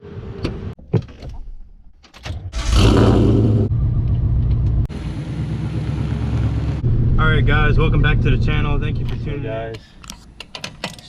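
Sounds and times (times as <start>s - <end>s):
car engine starting and idling: 2.5s - 9.6s.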